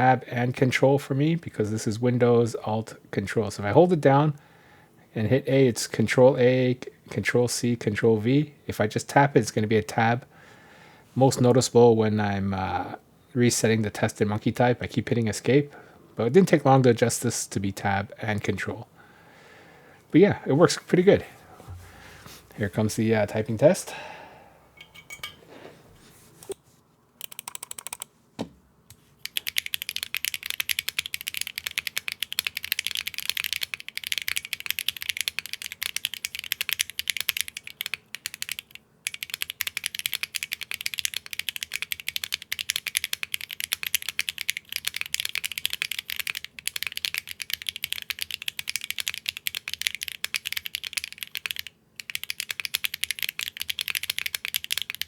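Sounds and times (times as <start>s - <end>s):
mechanical keyboard typing: 27.2s - 28.1s, 29.2s - 55.0s.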